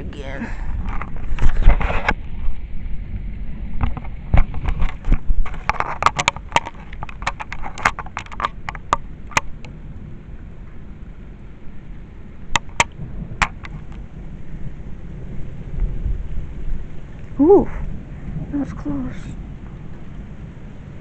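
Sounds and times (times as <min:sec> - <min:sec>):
rain taps: 0:00.0 - 0:21.0
low thunder rumble: 0:08.6 - 0:21.0.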